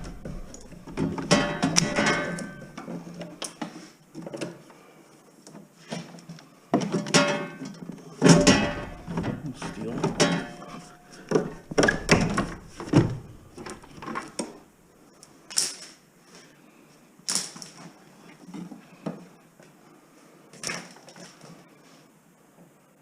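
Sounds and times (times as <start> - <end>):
scrap metal knocking and clattering: 0.0 - 3.2, 7.0 - 14.5.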